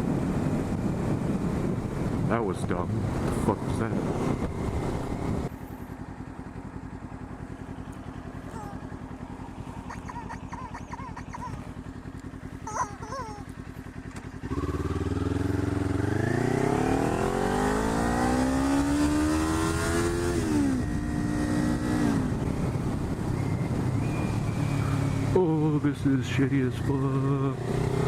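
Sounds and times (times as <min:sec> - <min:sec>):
motorcycle engine accelerating: 0:00.0 - 0:28.0.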